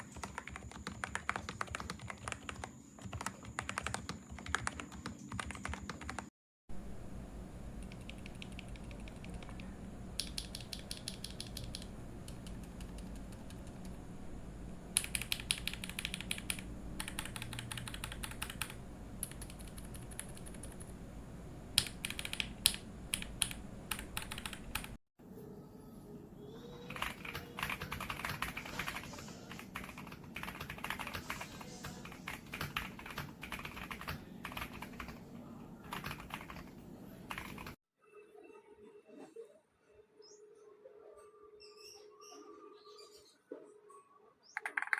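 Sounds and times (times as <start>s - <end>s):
mechanical keyboard typing: 0.0s - 6.3s, 7.8s - 13.9s, 15.0s - 20.9s, 21.8s - 25.0s, 26.9s - 35.2s, 35.8s - 37.8s, 44.6s - 44.9s.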